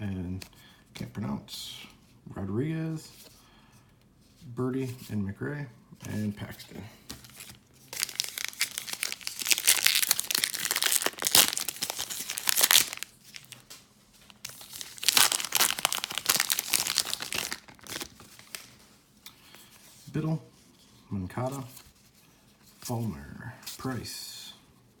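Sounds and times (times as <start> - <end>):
foil wrapper tearing and crinkling: 7.3 - 13.7, 14.3 - 18.8.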